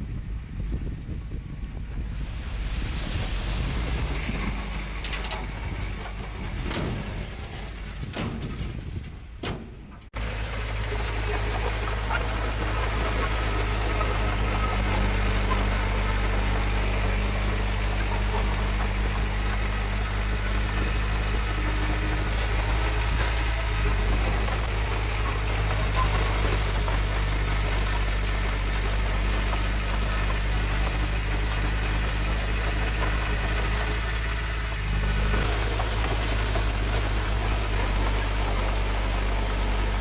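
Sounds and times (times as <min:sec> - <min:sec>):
rough wind-like rumble: 0:00.0 - 0:10.2
heavy diesel engine running: 0:00.0 - 0:40.0.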